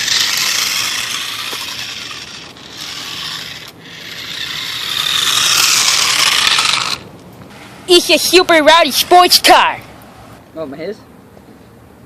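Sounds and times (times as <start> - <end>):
toy car motor whirring: 0.0 - 7.0
scraping hiss: 3.1 - 7.9.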